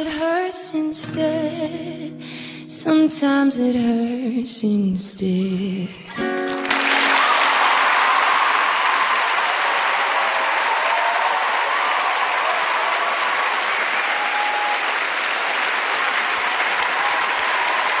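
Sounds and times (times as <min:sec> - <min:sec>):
cheers and whistles: 0:06.1 - 0:18.0
audience clapping: 0:06.2 - 0:18.0.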